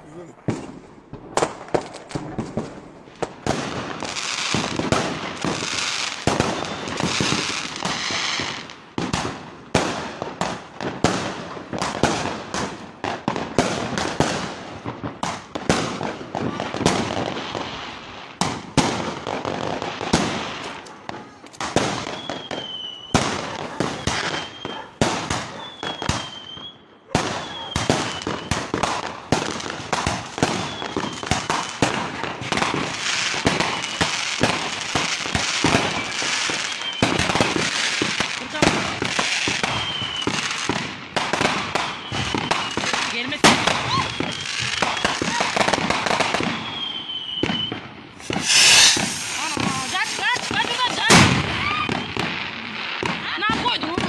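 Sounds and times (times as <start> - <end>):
fireworks bangs: 0.0 - 54.0
fireworks crackling: 0.0 - 54.0
thin whistle: 22.1 - 23.2, 24.1 - 24.9, 25.6 - 26.8, 27.4 - 28.5, 39.7 - 40.3, 43.9 - 45.2, 46.6 - 49.8.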